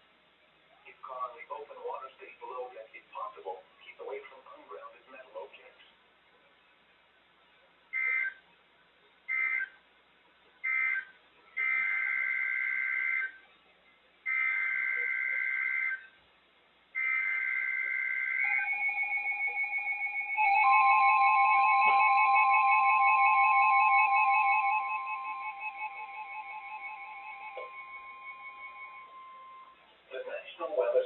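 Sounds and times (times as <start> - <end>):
pulsing high tone: 17.0 - 29.9
steady low tone: 18.4 - 30.5.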